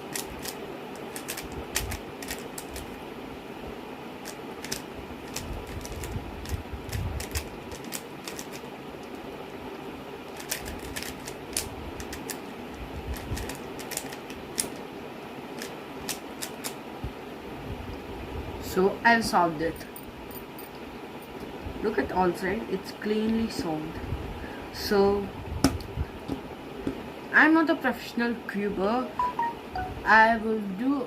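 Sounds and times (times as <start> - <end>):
puzzle cube clicking: 0.1 - 2.9, 4.2 - 6.6, 7.2 - 9.2, 10.4 - 12.5, 13.1 - 14.8, 15.6 - 16.8.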